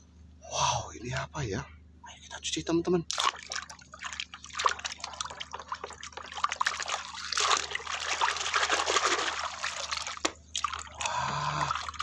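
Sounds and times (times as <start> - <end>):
water splashing and trickling: 3.1 - 12.0.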